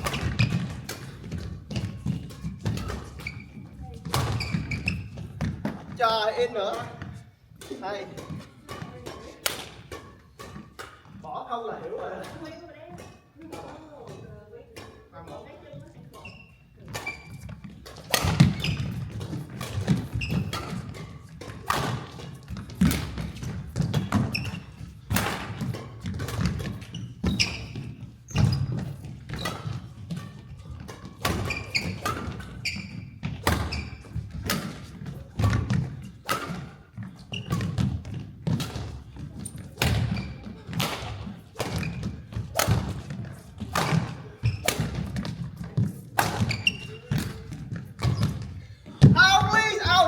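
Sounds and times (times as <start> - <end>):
shoe squeaks: 0.0 - 5.4, 16.0 - 21.3, 24.1 - 24.9, 26.8 - 34.3, 36.6 - 37.8, 39.4 - 40.7, 41.3 - 42.7, 43.3 - 45.2, 46.3 - 48.6
racket hitting shuttlecock: 0.0 - 11.2, 11.9 - 50.0
shoes thudding on court floor: 27.3 - 50.0.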